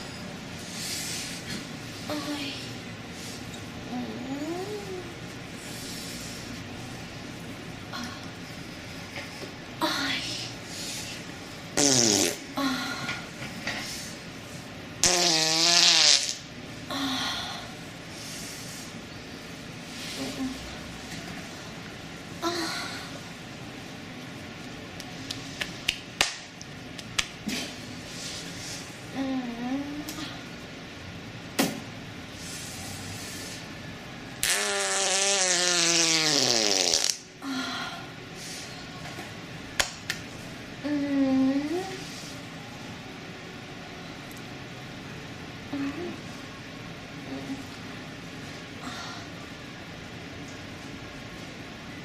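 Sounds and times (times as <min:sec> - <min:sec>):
loud fart: 0:11.8 - 0:12.5, 0:15.0 - 0:16.5, 0:34.4 - 0:37.3.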